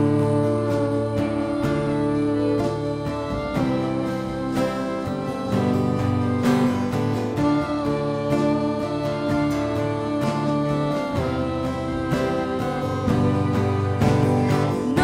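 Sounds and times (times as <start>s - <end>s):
guitar: 0.0s - 15.0s.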